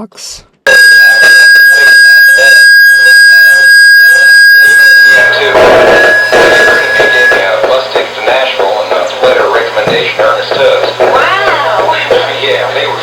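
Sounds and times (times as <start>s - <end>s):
high electronic tone: 0.7s - 8.4s
faint regular pulsing: 0.7s - 13.0s
dense noisy sound: 4.6s - 13.0s.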